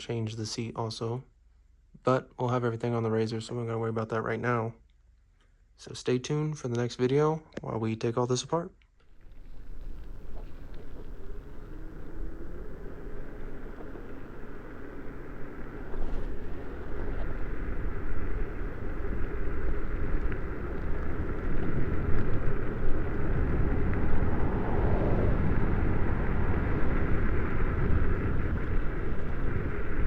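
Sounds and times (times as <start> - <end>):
electric mini bike rumble: 9.1 - 30.0
wind rush: 9.1 - 30.0.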